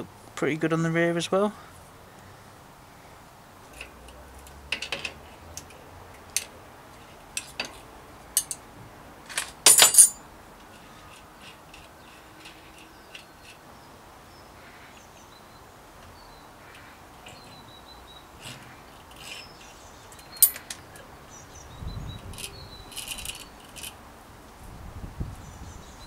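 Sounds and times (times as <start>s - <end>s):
metal clicks and clinks of tools: 8.4s - 8.6s, 9.3s - 10.2s, 19.1s - 21.1s
rattling metal clatter: 9.3s - 10.2s.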